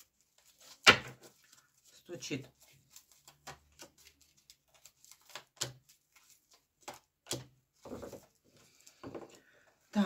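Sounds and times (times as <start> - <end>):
cards tapping and snapping: 2.9 - 8.2.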